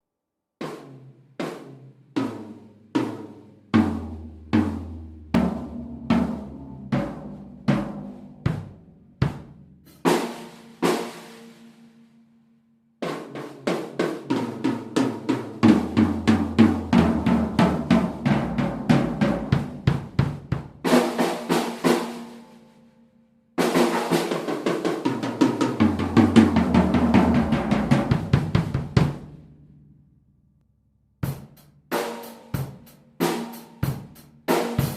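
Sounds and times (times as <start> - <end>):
drum fills and rolls: 0.6 - 11.6, 13.0 - 22.4, 23.6 - 29.4, 31.2 - 34.9
drum strokes: 3.8 - 11.3, 13.0 - 22.1, 23.6 - 29.3.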